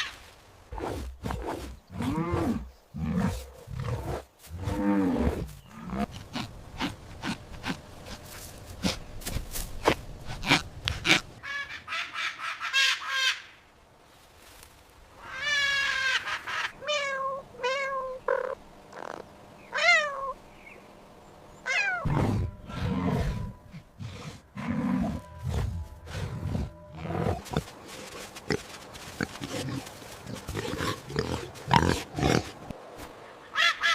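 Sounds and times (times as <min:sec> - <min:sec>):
high-pitched animal calls: 0:21.6 - 0:23.5
low heavy growling call: 0:21.7 - 0:28.6.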